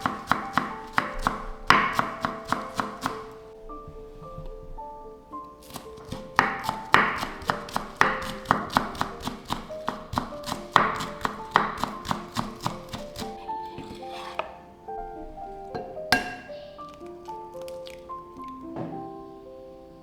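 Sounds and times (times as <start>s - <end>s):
knife chopping on cutting board: 0.0s - 3.4s, 5.6s - 14.6s
gentle background music: 0.0s - 20.0s.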